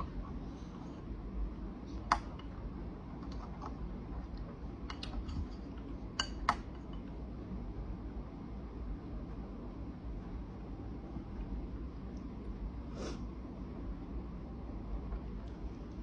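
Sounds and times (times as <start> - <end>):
low room hum: 0.0 - 16.0
tableware clicking and tapping: 4.9 - 7.1.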